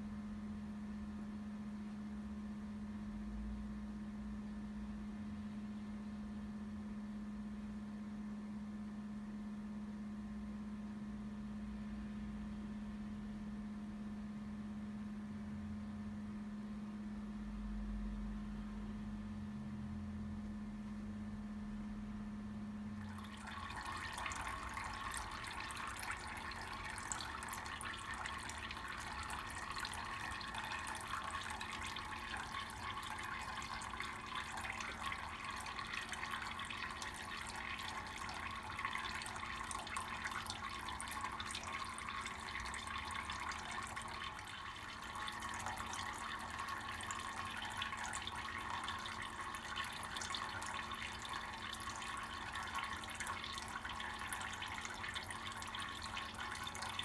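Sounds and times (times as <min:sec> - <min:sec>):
tap water splashing into sink: 0:23.0 - 0:57.0.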